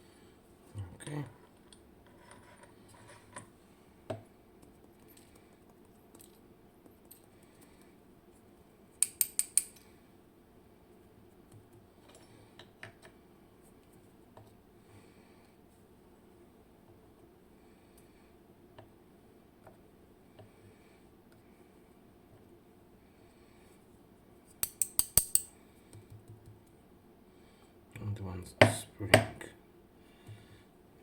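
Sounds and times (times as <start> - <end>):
metal clicks of lock parts: 9.0 - 9.8, 24.6 - 25.5.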